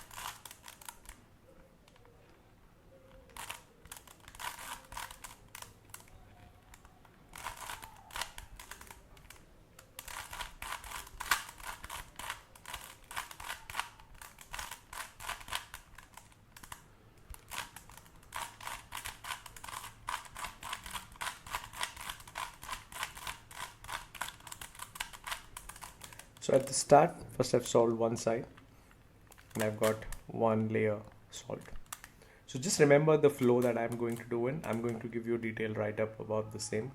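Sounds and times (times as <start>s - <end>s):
plastic puzzle cube clicking: 0.0s - 1.2s, 3.0s - 26.8s, 29.3s - 30.7s, 32.7s - 35.1s.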